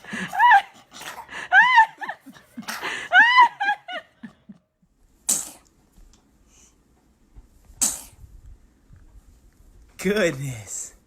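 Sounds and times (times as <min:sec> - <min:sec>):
baby sneezing: 0:05.3 - 0:05.7, 0:07.8 - 0:08.2.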